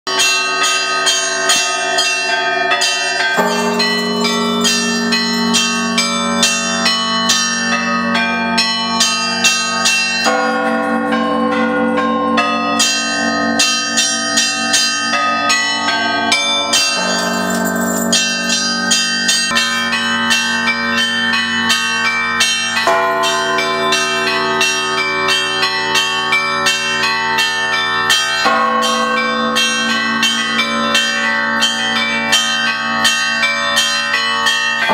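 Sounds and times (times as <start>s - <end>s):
deep bells tolling: 0.1s - 34.9s
small high bells ringing rapidly: 2.8s - 11.6s, 16.4s - 21.5s.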